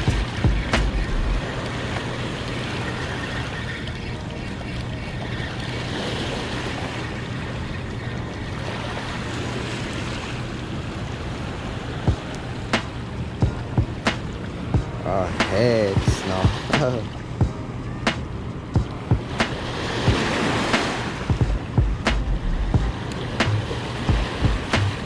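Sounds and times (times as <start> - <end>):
low steady hum: 0.0 - 5.8, 21.2 - 25.0
water rushing through floodgates: 0.0 - 25.0
sharp click: 12.8 - 13.0.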